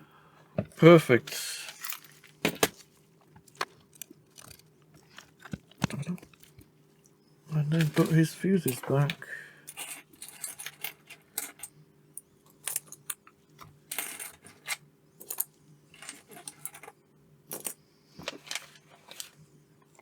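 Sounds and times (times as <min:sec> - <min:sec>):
small fuses clicking and clinking: 0:01.6 - 0:19.4.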